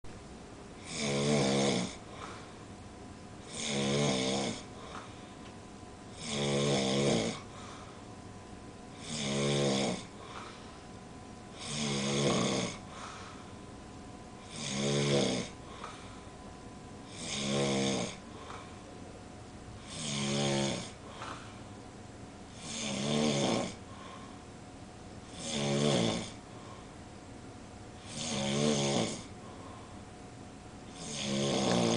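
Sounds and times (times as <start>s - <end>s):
man snoring: 0.8s - 2.4s, 3.4s - 5.1s, 6.1s - 7.9s, 8.9s - 10.5s, 11.6s - 13.4s, 14.4s - 16.1s, 17.1s - 18.6s, 19.8s - 21.4s, 22.5s - 23.8s, 25.3s - 26.4s, 28.0s - 29.4s, 30.9s - 31.9s.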